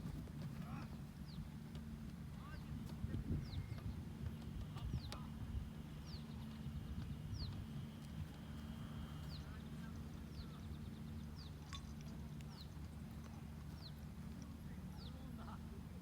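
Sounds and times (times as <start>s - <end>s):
low steady hum: 0.0s - 16.0s
bird chirping: 13.7s - 14.0s.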